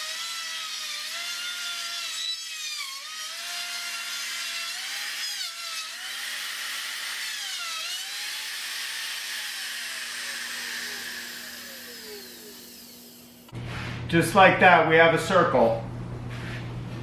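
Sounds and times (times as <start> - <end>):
router cutting through wood: 0.0 - 13.6.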